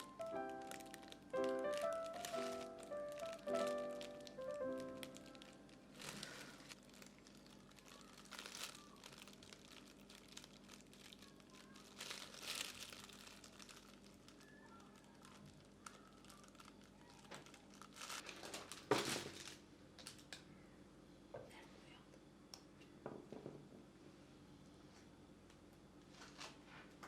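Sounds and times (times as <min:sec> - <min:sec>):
faint crinkling and rustling: 0:00.0 - 0:20.5, 0:26.0 - 0:27.0.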